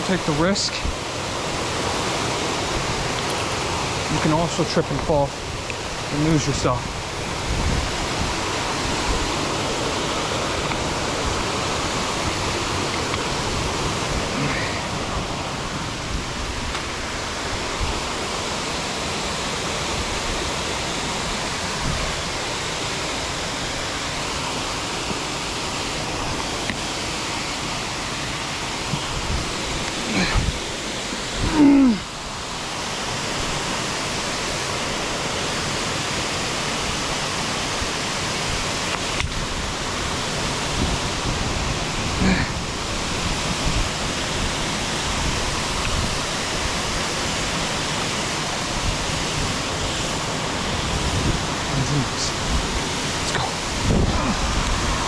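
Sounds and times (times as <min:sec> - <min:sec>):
rushing stream water: 0:00.0 - 0:55.0.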